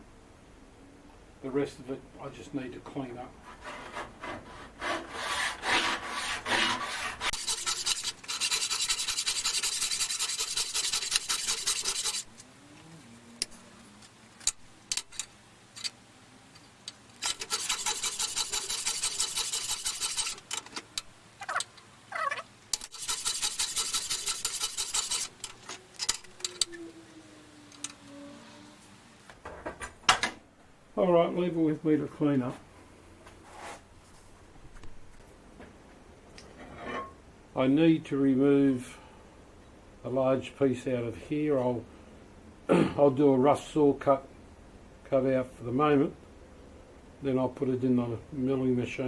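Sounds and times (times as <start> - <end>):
file rasping on metal: 3.5 - 12.3, 17.2 - 20.5, 22.8 - 26.3.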